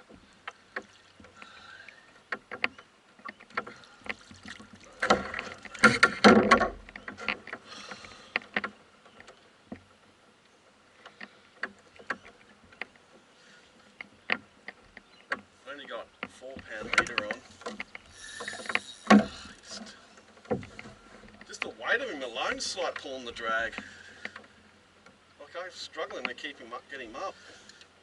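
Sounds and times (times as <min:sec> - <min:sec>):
fishing gear clicking and knocking: 0:02.2 - 0:10.0, 0:11.0 - 0:21.8, 0:22.4 - 0:25.2.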